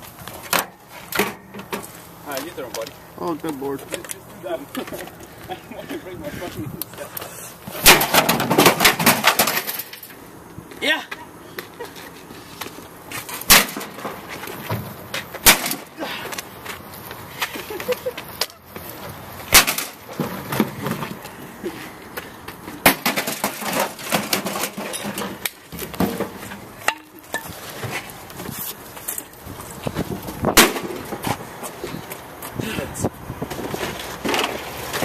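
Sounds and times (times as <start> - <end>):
rattling casing and parts: 0.0 - 10.6, 11.8 - 35.0
knocks and scrapes: 22.6 - 32.0, 33.4 - 35.0.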